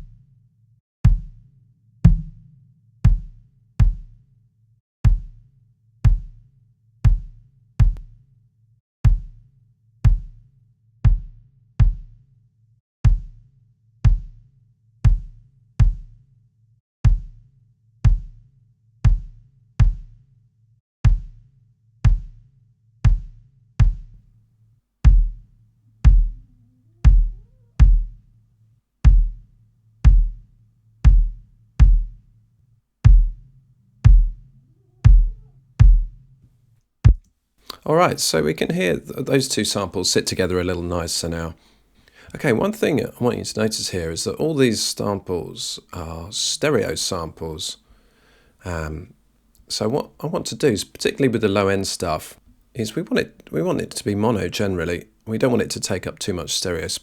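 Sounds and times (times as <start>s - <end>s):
kick drum hits: 1.1s - 1.4s, 2.1s - 4.2s, 5.1s - 5.3s, 7.1s - 8.0s, 9.1s - 9.3s, 10.1s - 10.3s, 11.1s - 12.1s, 13.1s - 13.3s, 14.1s - 14.4s, 15.1s - 16.1s, 17.1s - 17.4s, 18.1s - 18.3s, 19.1s - 20.2s, 21.0s - 21.4s, 22.1s - 22.4s, 23.1s - 24.2s, 25.1s - 28.3s, 29.0s - 32.3s, 33.1s - 36.3s, 37.0s - 37.2s
faint low hum: 25.4s - 28.8s.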